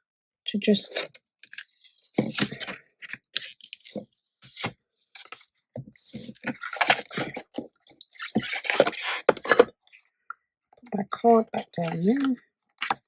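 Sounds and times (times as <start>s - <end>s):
paper supplies tapping and scraping: 2.1s - 9.7s.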